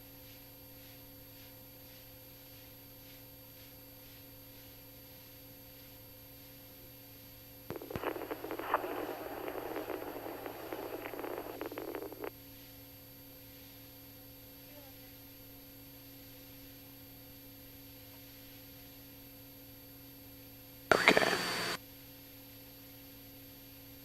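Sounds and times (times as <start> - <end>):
radio voice burst: 7.7 - 12.3, 20.9 - 21.8
steady tones: 7.7 - 12.3, 20.9 - 21.8
airplane engine drone: 20.9 - 21.8.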